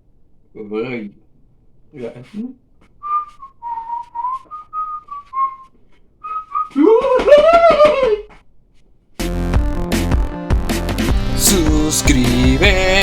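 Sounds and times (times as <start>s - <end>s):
person whistling a tune: 3.0s - 6.9s.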